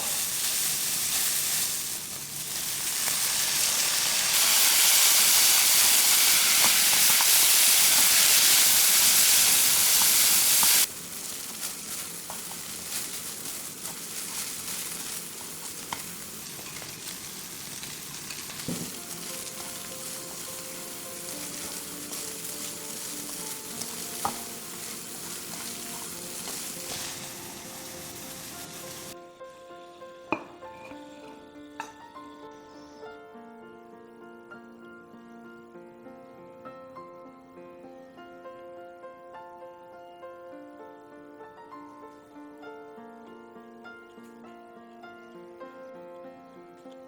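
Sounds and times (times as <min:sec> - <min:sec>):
food sizzling in hot oil: 0:00.0 - 0:29.2
soft music: 0:00.0 - 0:47.0.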